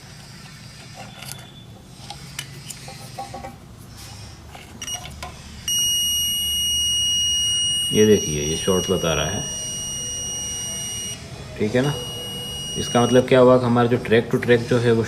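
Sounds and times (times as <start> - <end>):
multimeter continuity beep: 4.8 - 13.6.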